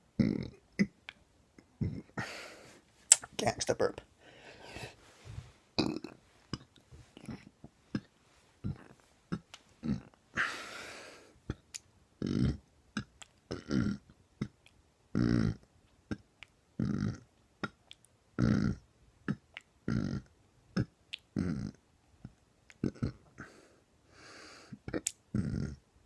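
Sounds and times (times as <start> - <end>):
man burping: 0.2 - 0.9, 5.8 - 6.2, 9.8 - 10.5, 12.2 - 12.6.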